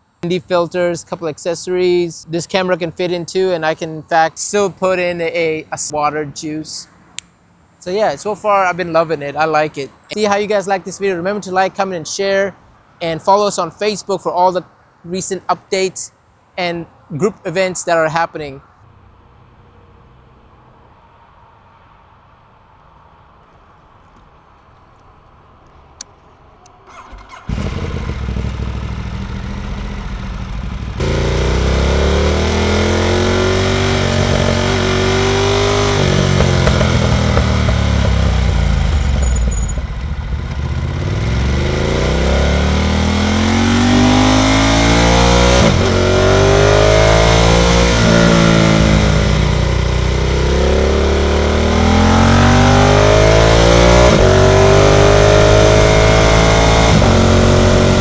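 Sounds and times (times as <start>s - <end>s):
motorcycle engine revving: 27.0s - 58.0s.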